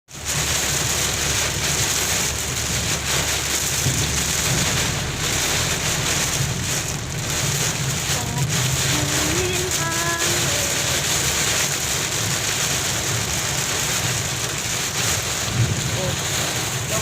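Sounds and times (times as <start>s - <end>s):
heavy rain with hail: 0.1s - 17.0s.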